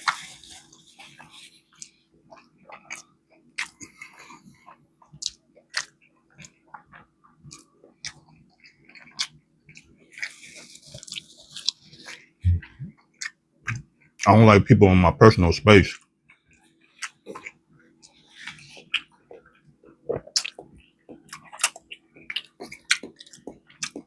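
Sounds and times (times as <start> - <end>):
chewing crunchy food: 0.0 - 14.3, 15.9 - 24.0
wet mouth clicks: 12.5 - 13.9, 17.0 - 19.5, 20.1 - 24.0.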